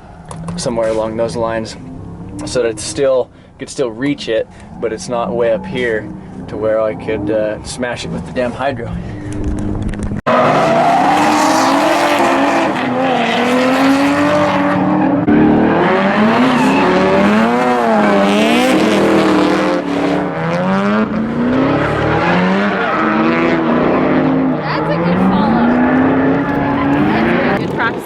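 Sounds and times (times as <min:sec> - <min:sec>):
car engine revving: 0:00.0 - 0:28.0
tire squeal: 0:04.4 - 0:07.8, 0:10.3 - 0:27.6.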